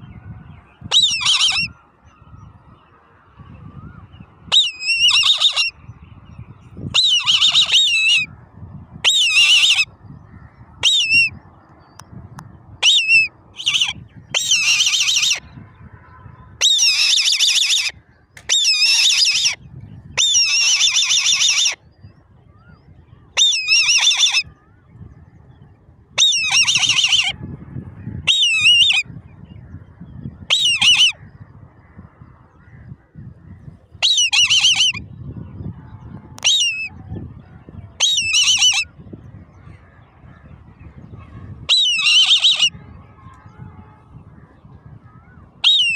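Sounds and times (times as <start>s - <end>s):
young eagles calling: 0.9s - 1.7s, 4.5s - 5.8s, 7.0s - 8.3s, 12.8s - 15.4s, 23.4s - 24.4s, 26.2s - 27.3s, 34.0s - 35.0s, 38.0s - 38.9s, 41.7s - 42.7s.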